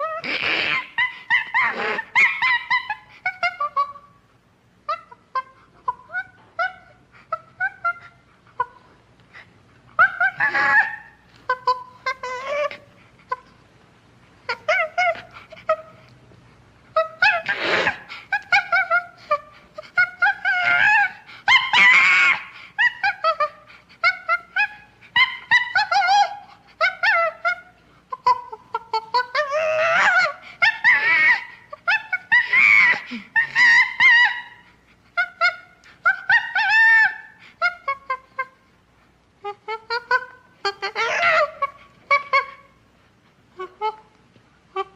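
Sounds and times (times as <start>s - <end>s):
ape cries: 0.0s - 4.1s, 10.0s - 13.5s, 17.0s - 38.6s, 39.4s - 42.7s.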